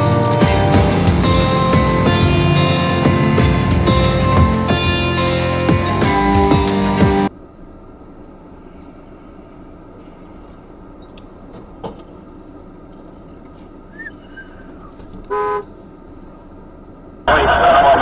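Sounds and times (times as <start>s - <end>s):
vehicle rumbling on road: 0.3s - 18.0s
faint short chirp: 13.9s - 15.7s.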